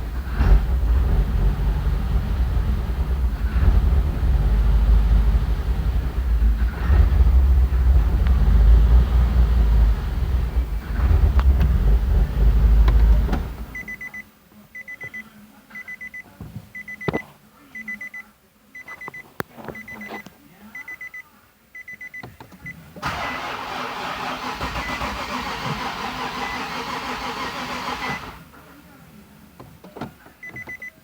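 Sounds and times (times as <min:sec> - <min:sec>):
car engine running: 0:00.0 - 0:14.0, 0:23.0 - 0:28.5
car warning chime beeping: 0:12.6 - 0:16.2, 0:30.4 - 0:31.0.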